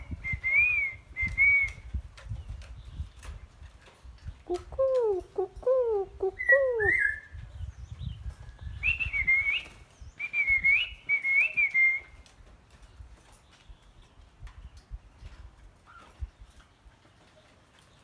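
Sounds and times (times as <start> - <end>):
songbird singing: 0.0 - 18.0.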